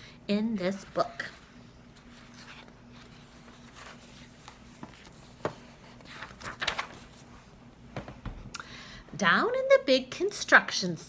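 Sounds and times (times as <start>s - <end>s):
book being handled: 0.7s - 8.2s.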